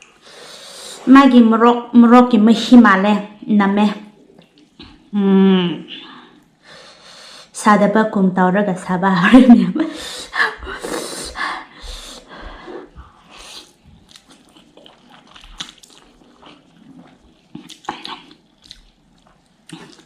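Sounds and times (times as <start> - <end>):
breaths: 6.0 - 7.5, 11.2 - 13.6
person chewing and slurping noodles: 10.8 - 20.0.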